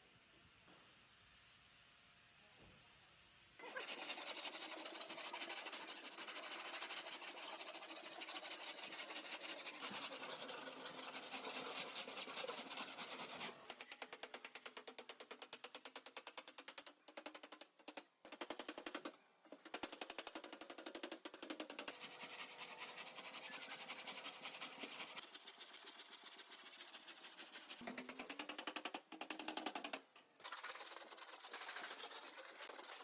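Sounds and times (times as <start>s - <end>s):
fast mechanical clatter: 13.0s - 22.2s.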